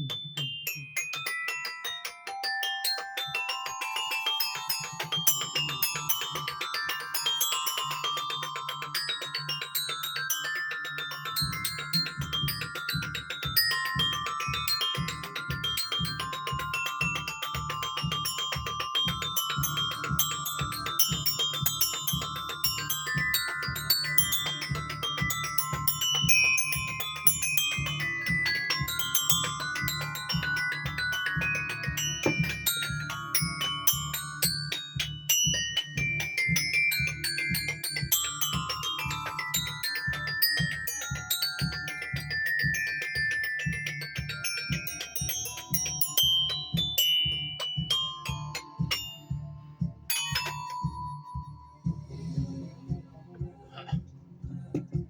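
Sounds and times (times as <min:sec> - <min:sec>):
mallet percussion run: 0:00.0 - 0:55.0
steady low beat: 0:48.6 - 0:55.0.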